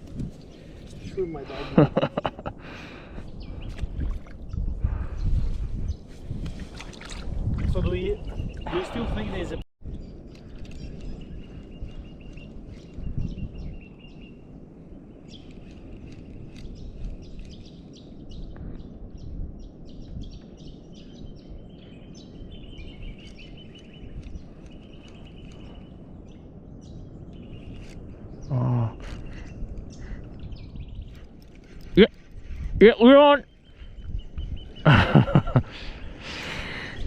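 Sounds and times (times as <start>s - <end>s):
birds chirping: 0.0s - 37.0s.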